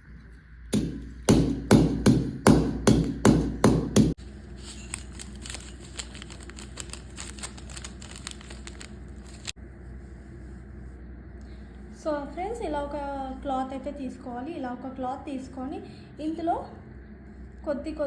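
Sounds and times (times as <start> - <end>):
pestle pounding seeds in mortar: 0.7 - 4.2.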